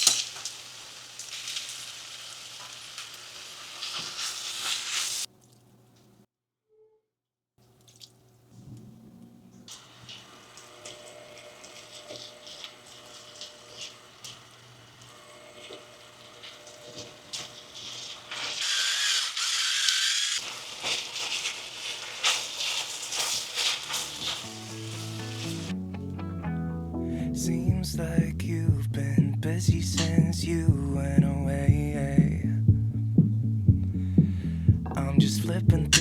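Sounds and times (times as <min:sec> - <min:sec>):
water hissing: 0:00.0 - 0:05.3, 0:17.1 - 0:25.8
clicks and drips: 0:05.3 - 0:06.2, 0:07.6 - 0:08.8.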